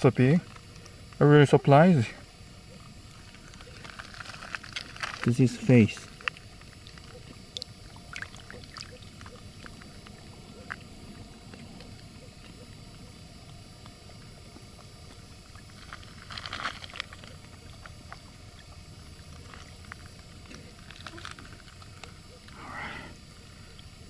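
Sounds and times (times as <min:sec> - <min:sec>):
wind: 0:00.0 - 0:24.0
water lapping: 0:06.2 - 0:11.6.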